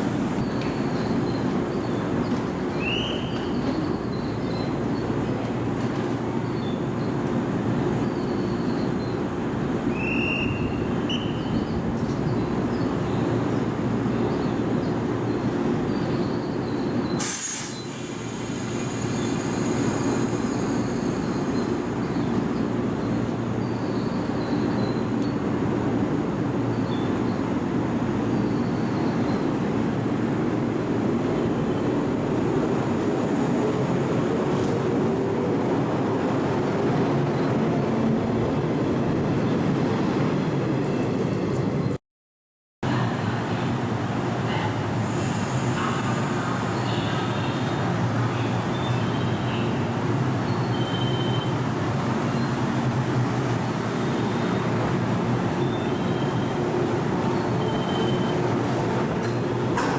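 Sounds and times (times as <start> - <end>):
train wheel squeals: 9.9 - 11.8, 15.9 - 22.4, 50.4 - 51.6, 55.6 - 56.6, 57.3 - 58.6
train rumbling: 25.0 - 42.0, 42.8 - 50.8, 51.5 - 59.9.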